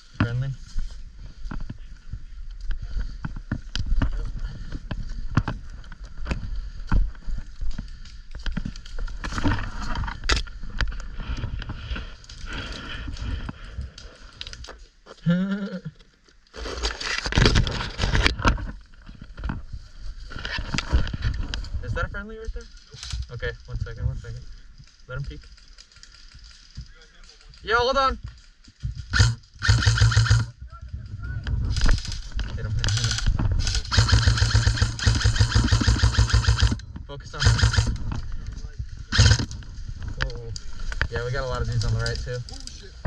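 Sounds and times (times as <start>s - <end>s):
gear clicking and rustling: 0.2s - 15.0s, 16.4s - 43.0s
wind rumble on microphone: 30.5s - 34.0s, 36.6s - 43.0s.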